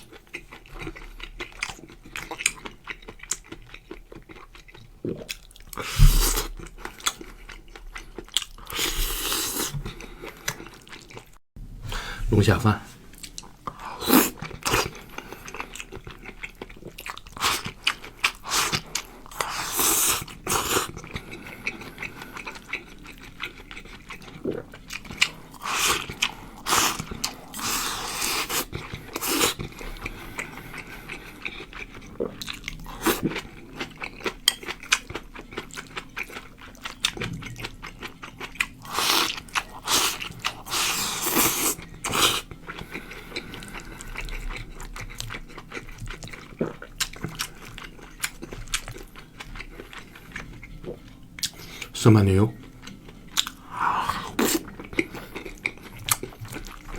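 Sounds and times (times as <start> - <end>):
person chewing food: 0.0 - 12.2, 13.0 - 56.9.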